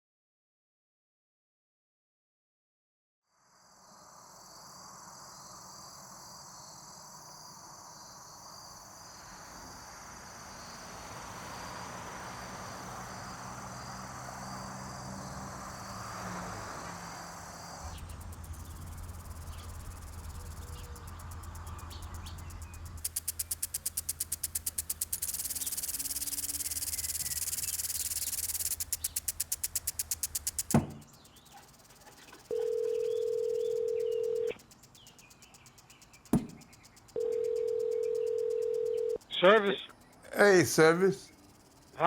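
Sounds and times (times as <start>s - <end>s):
insects chirring: 3.4s - 42.0s
fast even ticking: 18.0s - 35.0s.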